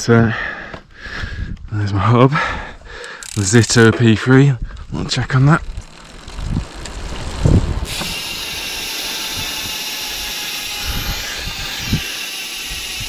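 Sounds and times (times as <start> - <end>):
bicycle freewheel hub buzzing: 2.9 - 13.0
bike thumping over bumps: 3.5 - 9.6.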